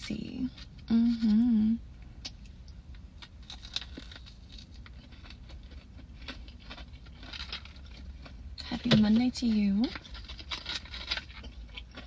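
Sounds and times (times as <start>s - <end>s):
mouth chewing with wet crackles: 2.2s - 8.7s, 9.3s - 12.0s.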